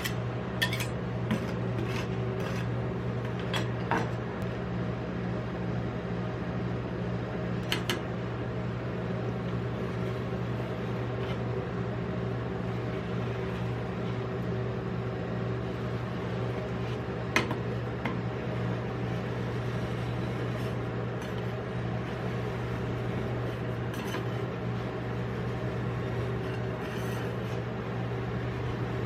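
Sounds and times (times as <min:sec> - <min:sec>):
metal spatulas scraping steel plate: 0:00.0 - 0:02.8, 0:23.3 - 0:24.5, 0:25.6 - 0:27.7
machine hum: 0:00.0 - 0:29.0.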